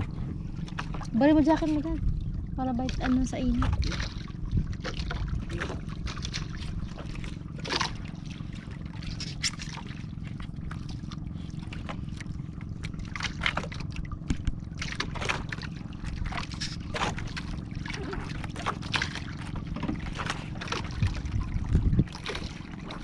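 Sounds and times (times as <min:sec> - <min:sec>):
steady low hum: 0:00.0 - 0:23.0
water splashing and dripping: 0:02.8 - 0:23.0.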